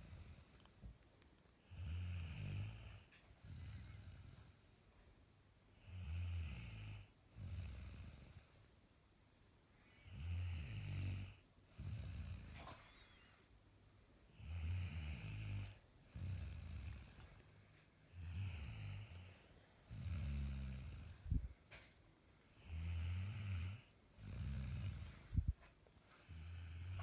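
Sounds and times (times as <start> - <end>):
person snoring: 18.1 - 21.5, 22.6 - 25.4.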